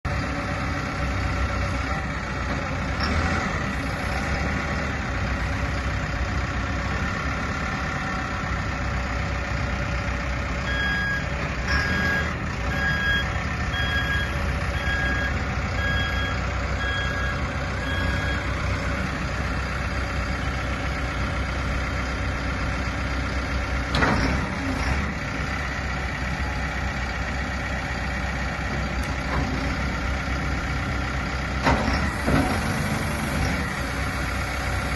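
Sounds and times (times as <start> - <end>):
diesel engine running: 0.0 - 34.9
reversing alarm beeping: 10.6 - 18.7.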